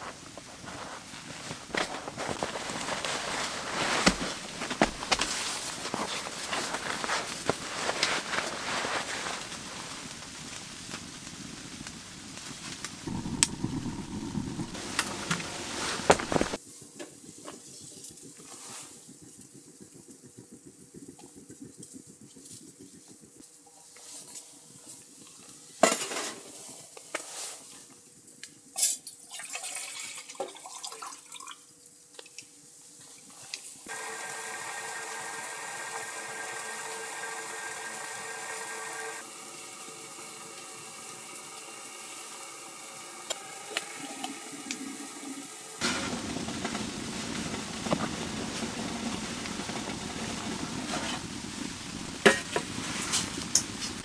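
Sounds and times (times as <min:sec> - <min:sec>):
liquid pouring: 0:13.1 - 0:16.6, 0:29.3 - 0:31.6, 0:33.9 - 0:45.8.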